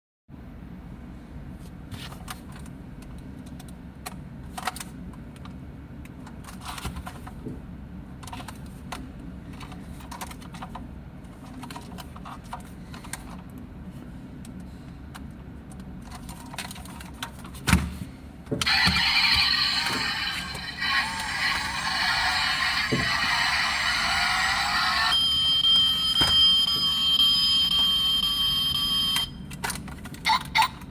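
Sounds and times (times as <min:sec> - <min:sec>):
electronic toy engine sound: 0:18.6 - 0:26.1, 0:30.2 - 0:30.9.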